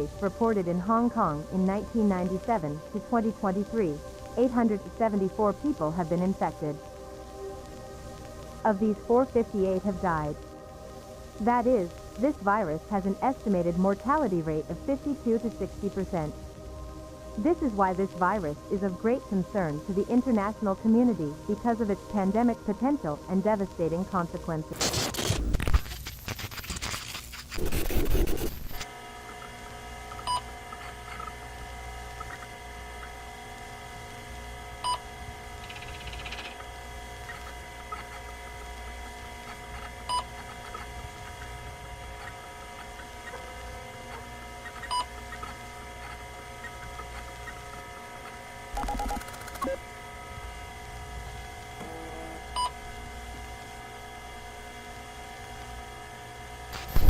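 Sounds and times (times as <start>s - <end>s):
harsh bursts of static: 24.7s - 28.8s, 56.7s - 57.0s
electronic drone: 26.5s - 57.0s.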